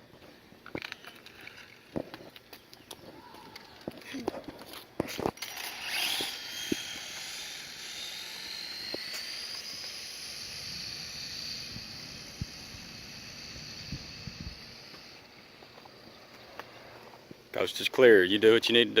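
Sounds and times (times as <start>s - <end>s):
electric motor whining: 5.2s - 17.2s
hiss: 6.0s - 15.5s.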